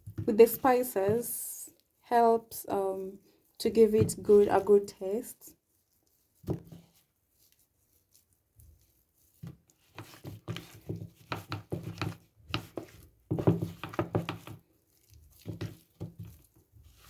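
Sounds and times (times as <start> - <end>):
hands handling chicken in bowl: 5.6 - 17.0.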